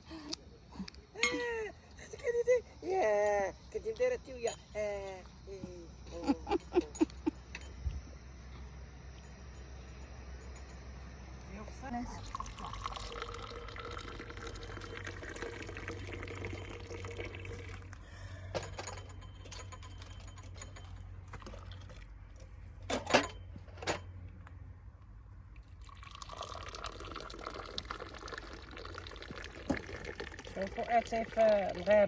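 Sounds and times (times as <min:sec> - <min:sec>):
water running: 0:12.1 - 0:17.9, 0:25.9 - 0:32.0.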